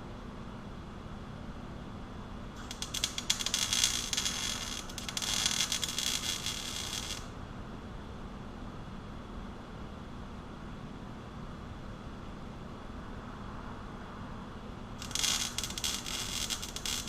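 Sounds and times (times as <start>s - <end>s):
mig welding crackle: 2.6s - 7.3s, 15.0s - 17.0s.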